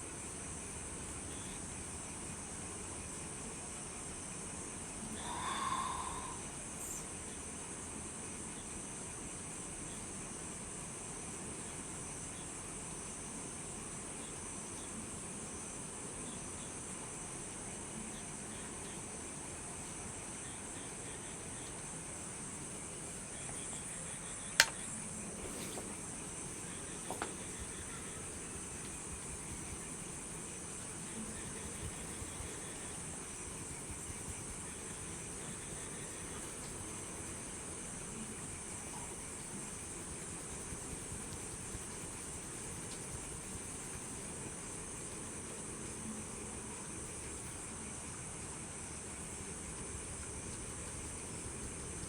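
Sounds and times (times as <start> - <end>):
night insects chirring: 0.0 - 52.0
sharp click: 24.6 - 24.9.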